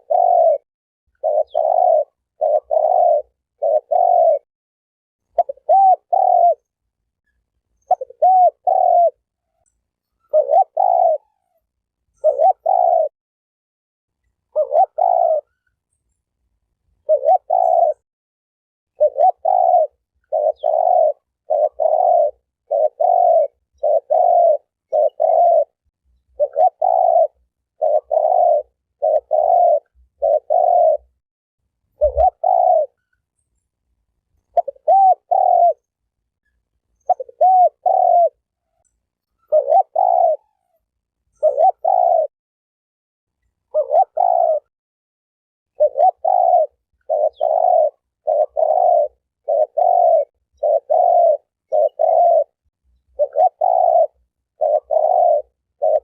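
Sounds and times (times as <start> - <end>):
dove cooing: 0.0 - 0.6, 1.2 - 4.5, 5.3 - 6.8, 7.8 - 9.6, 10.2 - 13.1, 14.5 - 15.7, 17.0 - 18.0, 18.9 - 31.2, 31.9 - 33.1, 34.4 - 35.9, 37.0 - 38.8, 39.4 - 42.3, 43.6 - 44.7, 45.8 - 56.0.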